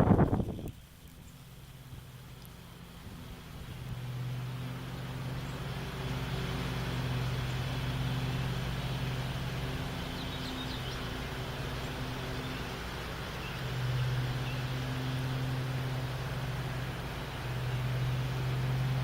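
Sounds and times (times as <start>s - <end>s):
gusty wind rushing: 0.0s - 0.8s
steady low hum: 0.0s - 19.0s.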